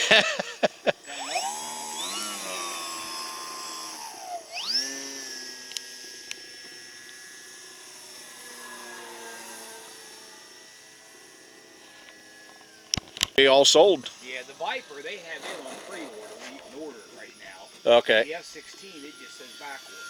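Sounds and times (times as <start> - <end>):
model airplane motor whining: 0.0 - 20.0.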